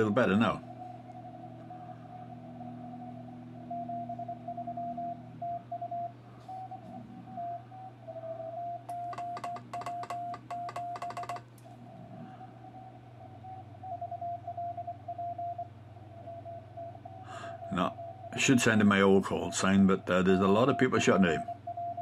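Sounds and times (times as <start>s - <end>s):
morse code tones: 0.0s - 11.4s, 17.6s - 22.0s
low steady hum: 0.0s - 22.0s.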